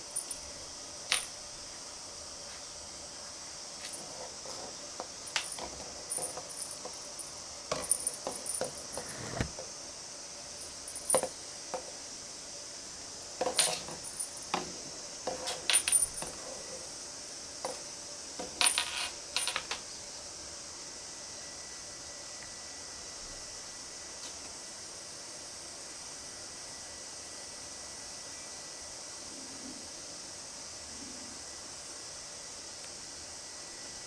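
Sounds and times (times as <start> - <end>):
steady hiss: 0.0 - 34.0
metallic clinks and jingles: 0.1 - 0.5, 3.9 - 9.4, 13.4 - 14.6, 15.3 - 16.6.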